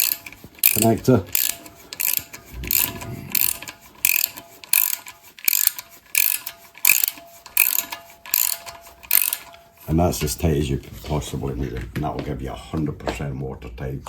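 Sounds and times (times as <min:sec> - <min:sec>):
hose clip ratcheting: 0:00.0 - 0:09.6.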